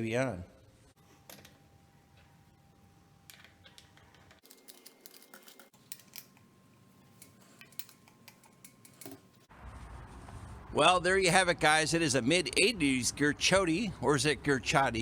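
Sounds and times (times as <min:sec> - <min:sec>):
small metal clicks and ticks: 0:03.3 - 0:06.5, 0:07.2 - 0:09.2.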